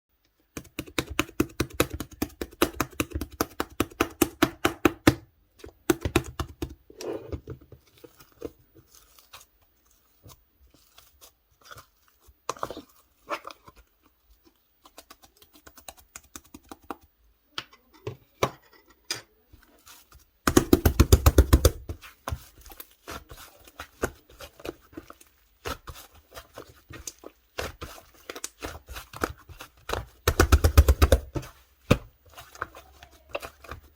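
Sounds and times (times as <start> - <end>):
slime popping as kneaded: 20.4 - 33.9.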